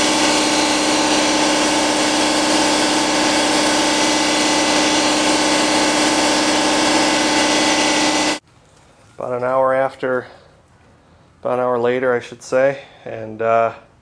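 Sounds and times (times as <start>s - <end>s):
air compressor motor running: 0.0s - 8.4s.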